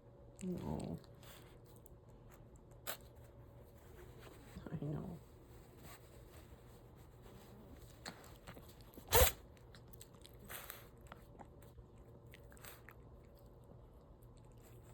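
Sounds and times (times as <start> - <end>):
snorts and sniffs: 8.4 - 9.4, 10.3 - 11.0
pet sneezing: 9.0 - 9.4.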